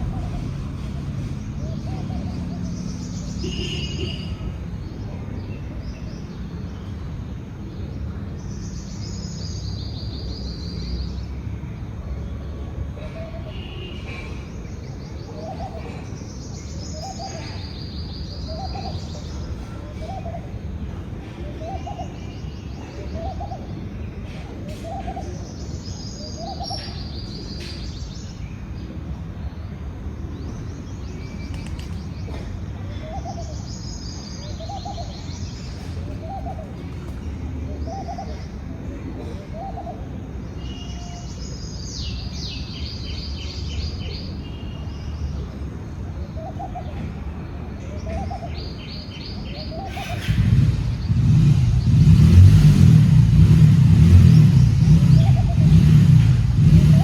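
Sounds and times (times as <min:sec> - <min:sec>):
steady low rumble: 0:00.0 - 0:01.8.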